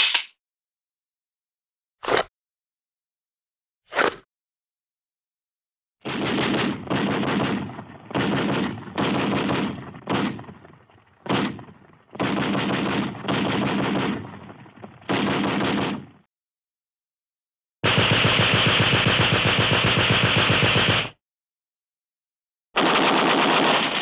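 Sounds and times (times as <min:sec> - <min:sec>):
machine-gun fire: 0:06.0 - 0:16.3, 0:17.8 - 0:21.2, 0:22.8 - 0:24.0.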